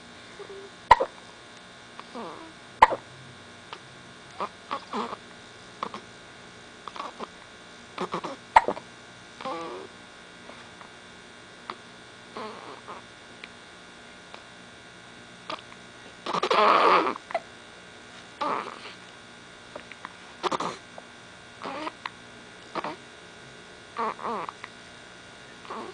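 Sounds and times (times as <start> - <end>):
person hiccuping: 0.5 - 1.2, 2.1 - 3.0, 8.0 - 8.8, 16.2 - 17.5, 20.4 - 20.8, 21.6 - 22.0, 22.7 - 23.0.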